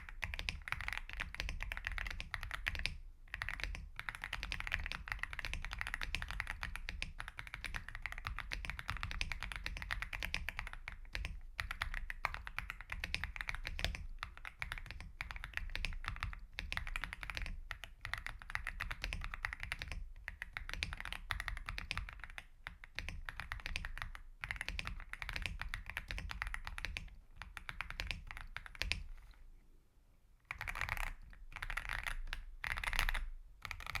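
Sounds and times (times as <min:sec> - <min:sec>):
fast typing on mechanical keyboard: 0:00.0 - 0:29.1, 0:30.5 - 0:34.0.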